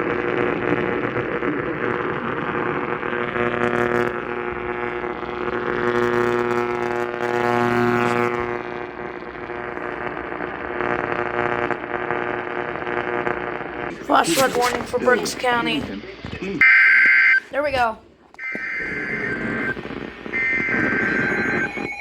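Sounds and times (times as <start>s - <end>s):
buzzing drone: 0.0s - 16.0s
radio receiver hiss: 0.0s - 17.6s.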